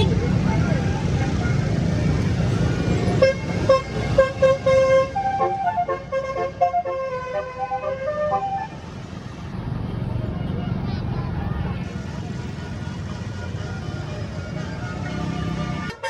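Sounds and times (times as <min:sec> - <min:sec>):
vehicle engine rumbling: 0:00.0 - 0:16.0
bus musical horn playing tune: 0:03.1 - 0:08.8, 0:13.7 - 0:16.0.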